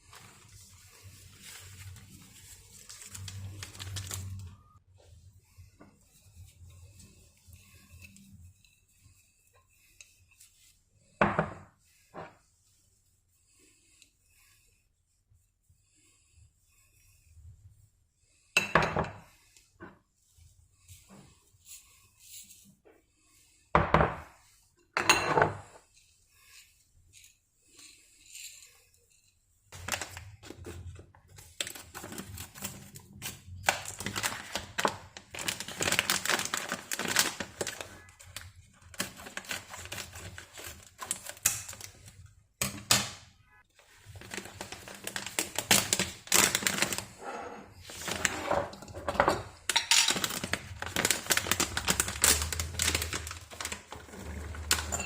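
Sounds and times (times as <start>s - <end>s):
utensils and dishes clinking: 48.1s - 51.1s, 52.3s - 55.0s.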